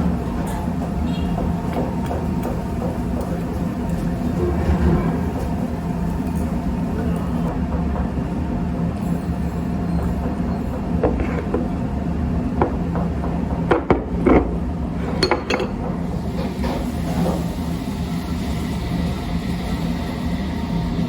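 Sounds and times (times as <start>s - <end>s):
dishes clinking: 13.7s - 15.9s.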